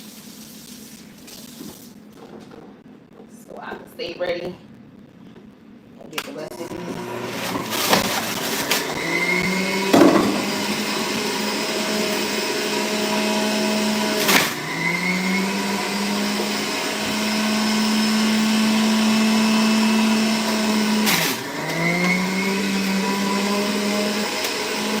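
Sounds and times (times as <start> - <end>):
juicer motor running: 6.5 - 25.0
juicer click: 9.7 - 11.3, 14.1 - 14.6.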